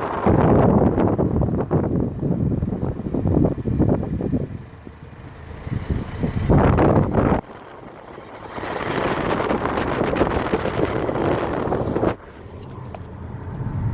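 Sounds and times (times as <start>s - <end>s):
wind buffeting microphone: 0.0s - 4.8s, 5.6s - 13.9s
loud rushing noise: 10.8s - 13.9s.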